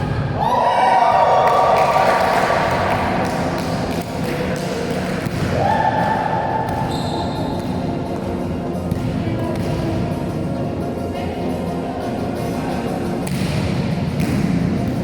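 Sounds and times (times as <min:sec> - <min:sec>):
volleyball hits echoing: 0:01.0 - 0:08.3, 0:08.9 - 0:10.2, 0:13.2 - 0:15.0.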